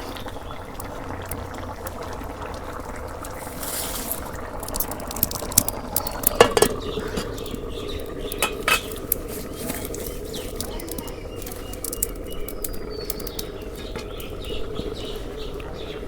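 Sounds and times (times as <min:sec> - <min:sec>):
chicken simmering and sizzling in pot: 0:00.0 - 0:16.0
metal utensil clinking against pot: 0:03.6 - 0:07.6, 0:08.2 - 0:12.8.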